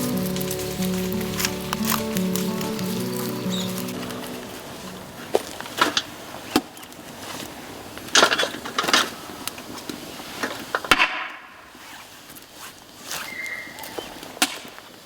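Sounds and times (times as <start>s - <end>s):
bamboo cracking and snapping: 0.0s - 7.0s.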